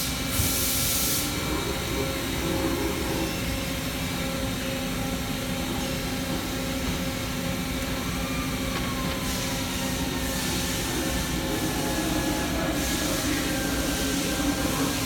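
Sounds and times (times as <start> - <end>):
hiss: 0.0 - 1.4, 9.2 - 15.0
boring mill mechanical hum: 0.0 - 15.0.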